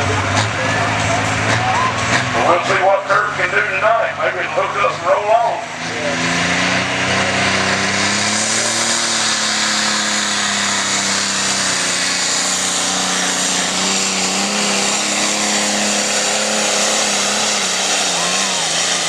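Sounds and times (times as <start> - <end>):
vehicle engine running at high revs: 0.0 - 19.0.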